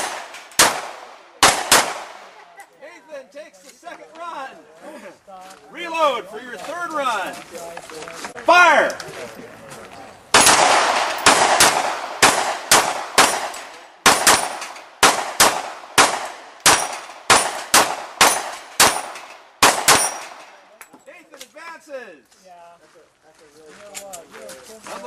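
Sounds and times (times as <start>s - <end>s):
gunshots hitting steel plates: 0.0s - 2.4s, 10.3s - 20.6s.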